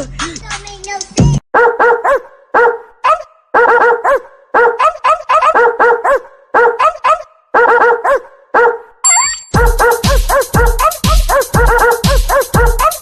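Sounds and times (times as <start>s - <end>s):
small dog yapping: 1.6s - 8.8s.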